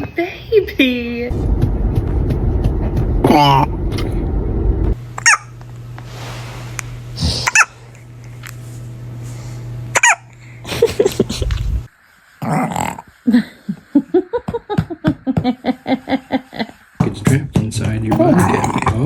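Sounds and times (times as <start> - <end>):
baby hiccuping: 7.4 - 7.7, 10.0 - 10.2.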